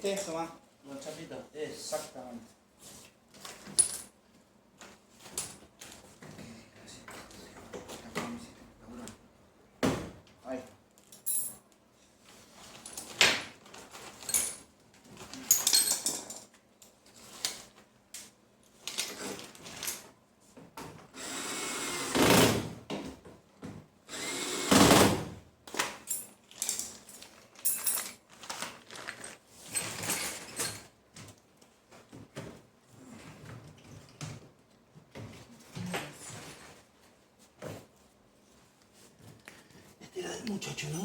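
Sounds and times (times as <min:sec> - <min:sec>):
metal parts and screws clinking: 0:15.4 - 0:16.6, 0:26.0 - 0:30.9
power drill whirring: 0:21.2 - 0:22.3, 0:24.1 - 0:24.9.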